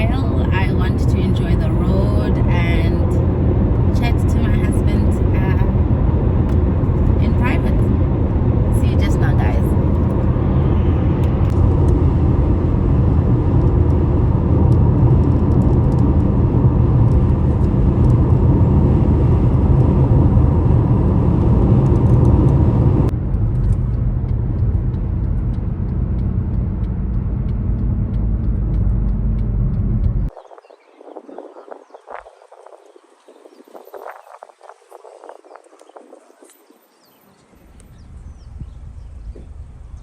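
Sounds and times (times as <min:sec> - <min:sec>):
car engine and tyre rumble: 0:00.0 - 0:40.0.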